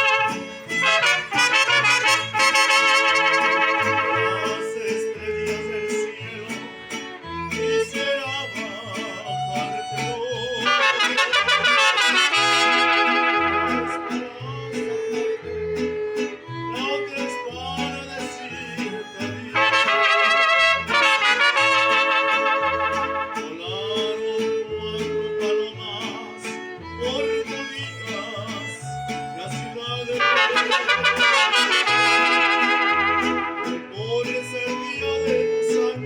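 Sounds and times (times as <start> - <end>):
trumpets playing melody: 0.0 - 4.8, 10.6 - 14.4, 19.5 - 23.6, 30.2 - 33.9
strummed guitars: 0.0 - 36.0.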